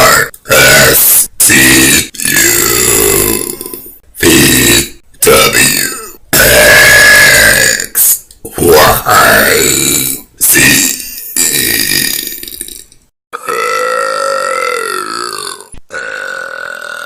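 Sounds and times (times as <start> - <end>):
young women belching: 13.4 - 17.0.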